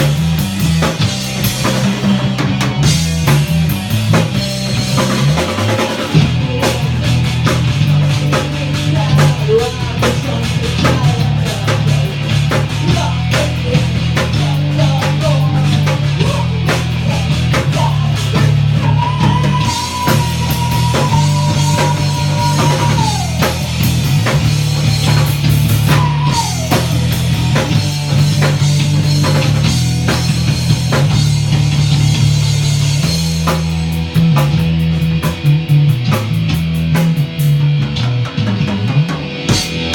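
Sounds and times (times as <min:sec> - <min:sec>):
rock band playing: 0:00.0 - 0:39.9.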